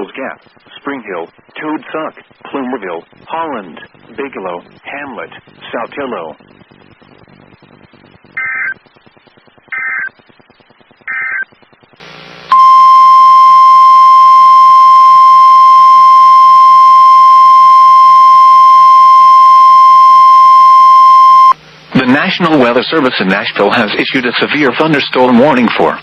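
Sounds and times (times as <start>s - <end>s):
warbling digital data bursts: 7.1s - 12.0s.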